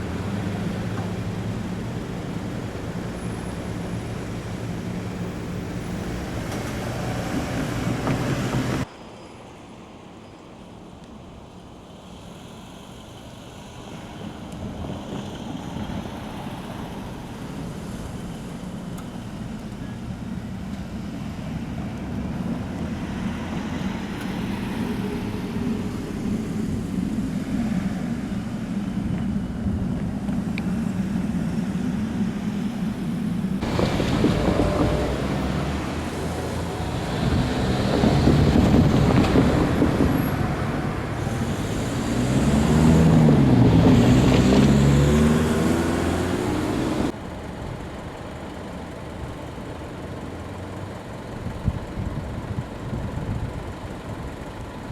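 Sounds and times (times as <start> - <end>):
train rumbling on tracks: 0.0 - 8.9, 13.8 - 48.2.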